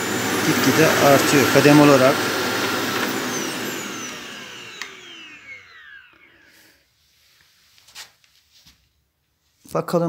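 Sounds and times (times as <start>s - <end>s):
vacuum cleaner motor spinning down: 0.0s - 6.8s.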